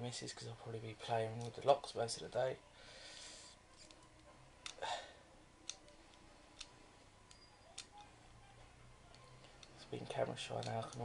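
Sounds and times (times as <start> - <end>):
faint clicks of lock picking: 3.7 - 4.8, 5.6 - 8.1, 10.4 - 11.0.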